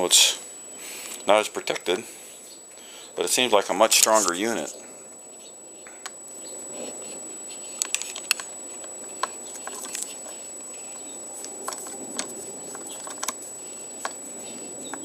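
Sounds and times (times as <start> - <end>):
faint high whine: 0.0 - 15.0
metal parts and tools clicking: 11.7 - 13.4.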